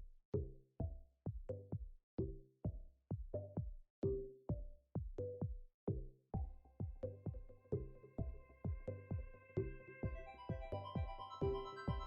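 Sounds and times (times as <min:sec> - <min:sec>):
drum-machine beat: 0:00.0 - 0:12.0
low synth notes: 0:07.0 - 0:12.0.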